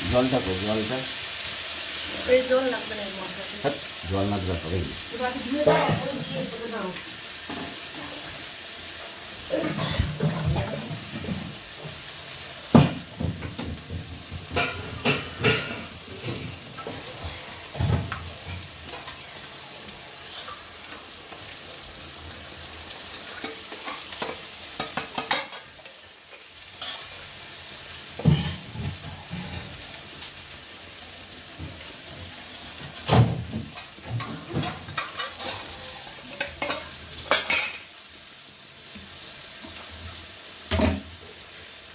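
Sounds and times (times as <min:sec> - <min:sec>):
spices sizzling in hot oil: 0:00.0 - 0:41.9
metal spatula scraping a pan: 0:23.1 - 0:27.3, 0:28.2 - 0:30.0, 0:33.7 - 0:37.9.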